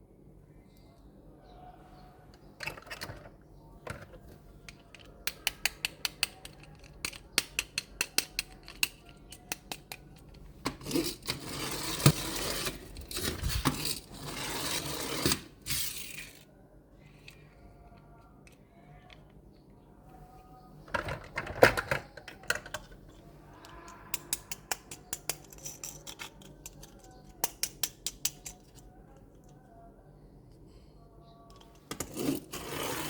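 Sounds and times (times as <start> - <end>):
toy trucks clicking: 3.9 - 16.5, 20.9 - 29.6
toys scraping and rustling: 10.7 - 16.5, 31.6 - 33.0.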